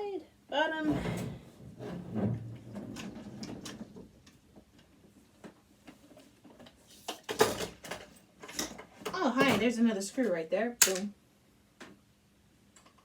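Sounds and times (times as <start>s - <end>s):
metal parts clicking and tapping: 10.8s - 11.1s.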